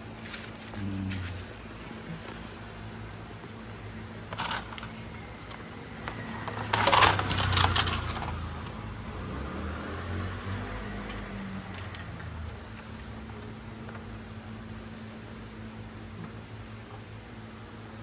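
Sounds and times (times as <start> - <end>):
metal parts clinking and rattling: 4.4 - 5.0, 6.0 - 8.4.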